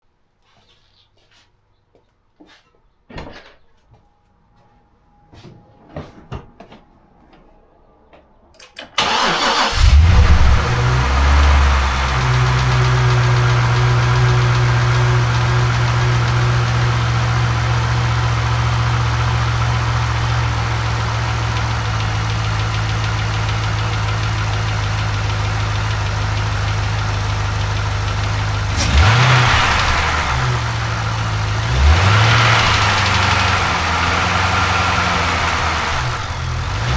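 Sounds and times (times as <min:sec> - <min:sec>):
car engine starting and idling: 0:08.8 - 0:36.9
engine revving: 0:09.0 - 0:36.9.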